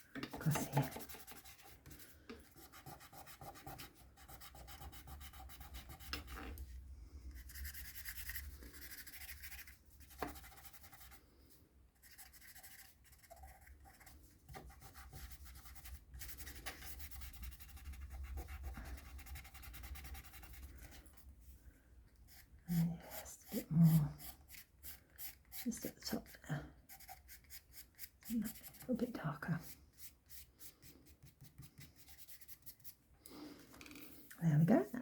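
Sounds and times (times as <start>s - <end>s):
pastel pencil scratching on card: 0.4s - 6.6s, 7.4s - 11.2s, 12.0s - 21.0s, 26.9s - 29.0s.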